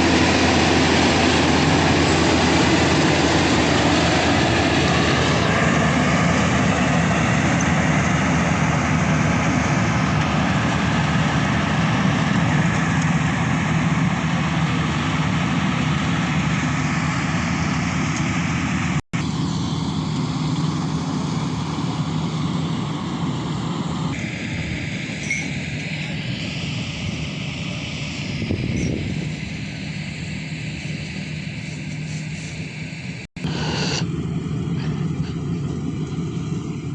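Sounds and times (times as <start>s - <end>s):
combine harvester running: 0.0s - 36.9s.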